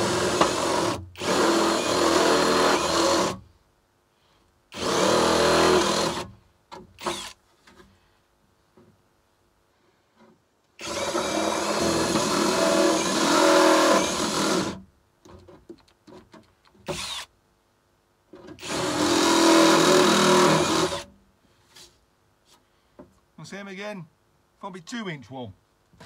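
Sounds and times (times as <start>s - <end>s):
power drill cutting sheet material: 0.0s - 3.4s, 7.0s - 7.4s, 10.8s - 14.8s, 16.9s - 17.3s, 18.6s - 21.1s.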